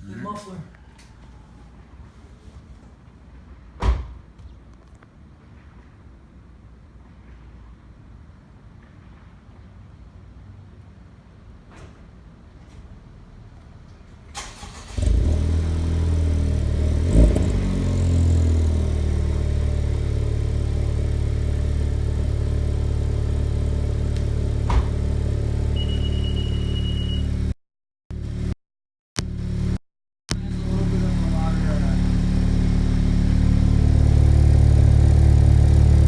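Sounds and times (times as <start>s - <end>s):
car engine cranking and starting: 14.3s - 27.4s, 29.2s - 36.0s
car engine idling: 14.6s - 27.4s, 30.3s - 36.0s.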